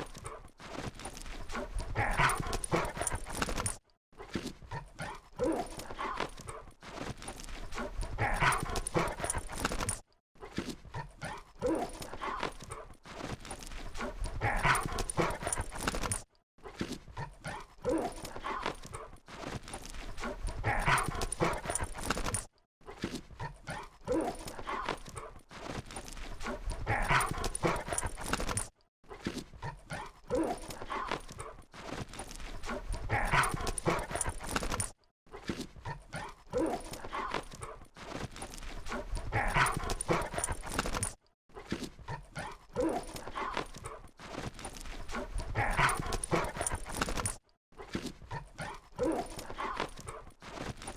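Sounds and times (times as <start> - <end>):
small dog noises: 1.4 - 3.8, 7.7 - 10.0, 19.8 - 25.3, 26.1 - 31.7, 32.4 - 34.9, 35.9 - 47.4.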